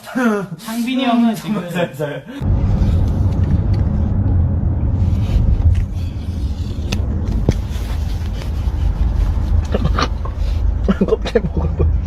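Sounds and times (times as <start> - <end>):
steady low rumble: 2.4 - 12.0.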